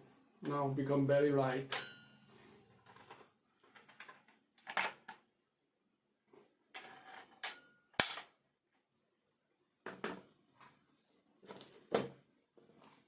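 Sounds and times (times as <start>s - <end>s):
air rifle sharp cracks: 8.0s - 8.3s.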